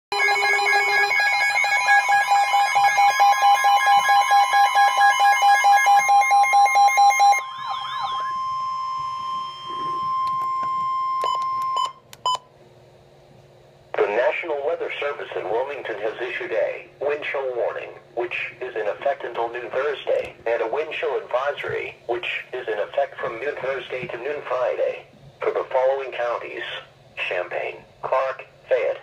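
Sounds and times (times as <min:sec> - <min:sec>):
rapid pulsing alarm: 0:00.1 - 0:12.0
steady high tone: 0:00.1 - 0:12.0
warbling siren: 0:00.1 - 0:12.0.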